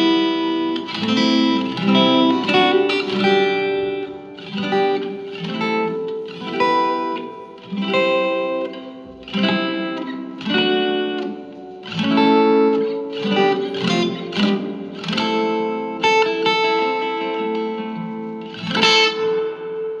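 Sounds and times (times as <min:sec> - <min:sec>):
acoustic guitar chords ringing: 0:00.0 - 0:20.0
loud guitar strum: 0:00.0 - 0:20.0.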